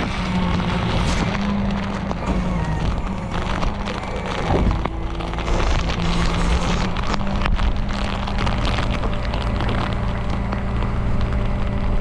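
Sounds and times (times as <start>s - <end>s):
rain: 0.0s - 12.0s
truck engine idling: 0.0s - 12.0s
wind noise on microphone: 0.0s - 12.0s.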